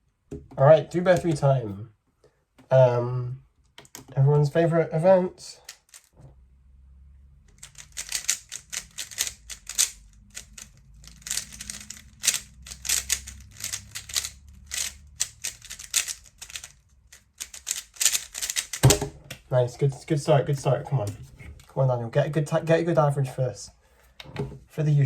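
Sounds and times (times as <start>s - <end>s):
puzzle cube layers clicking: 7.5s - 21.2s.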